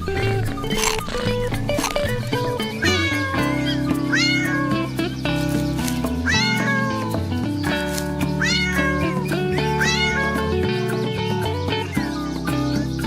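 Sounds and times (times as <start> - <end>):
background music with sustained notes: 0.0 - 13.0
cat meowing: 2.7 - 4.8, 6.2 - 7.2, 8.4 - 10.5.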